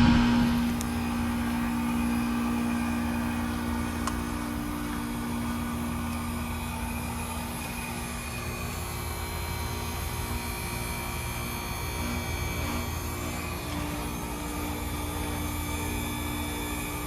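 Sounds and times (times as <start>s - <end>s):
whooshing rush of air: 0.0s - 0.8s
heat pump humming: 0.0s - 17.0s.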